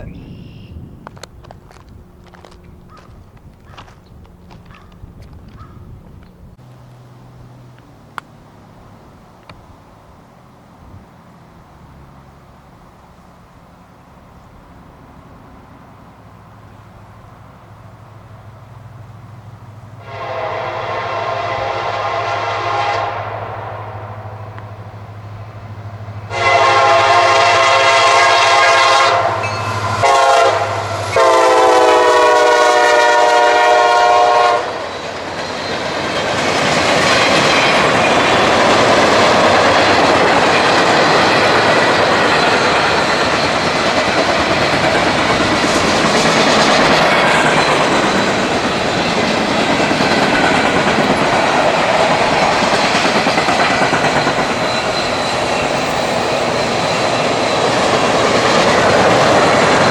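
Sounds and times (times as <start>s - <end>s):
locomotive air horn blasts: 20.0s - 24.6s, 26.3s - 34.9s
train wheels clacking over rail joints: 31.1s - 59.9s.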